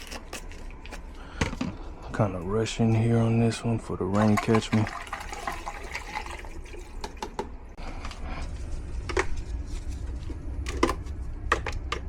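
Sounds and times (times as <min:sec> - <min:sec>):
low steady rumble: 0:07.5 - 0:12.0.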